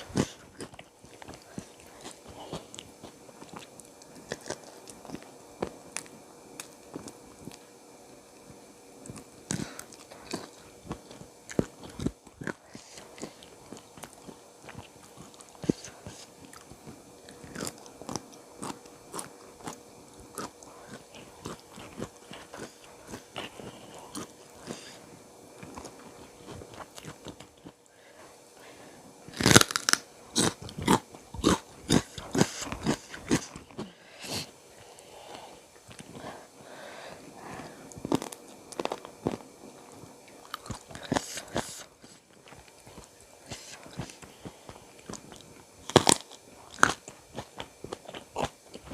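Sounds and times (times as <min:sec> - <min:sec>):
person chewing crunchy food: 0:00.0 - 0:07.8, 0:08.4 - 0:28.4, 0:29.3 - 0:48.9.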